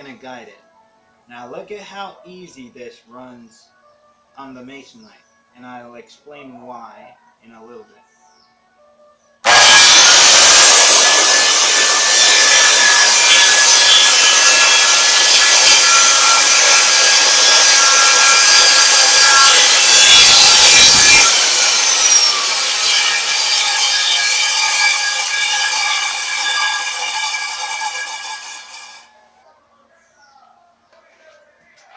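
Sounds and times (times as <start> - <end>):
circular saw cutting board: 9.4 - 29.1
saw blade winding down: 9.4 - 29.1.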